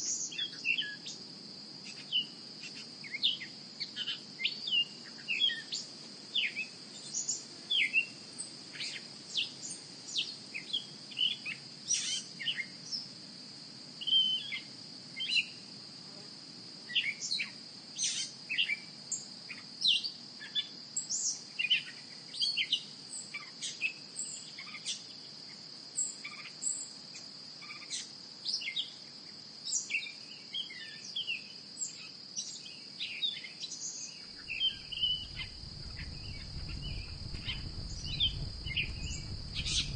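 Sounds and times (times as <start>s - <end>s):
birds chirping: 34.4s - 39.9s
high-pitched insect drone: 34.4s - 39.9s.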